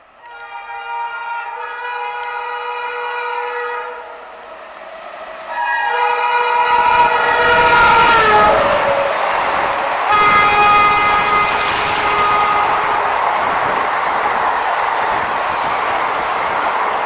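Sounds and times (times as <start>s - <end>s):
passing train rushing: 0.0s - 17.0s
shrill locomotive horn: 0.2s - 4.2s, 5.5s - 13.2s.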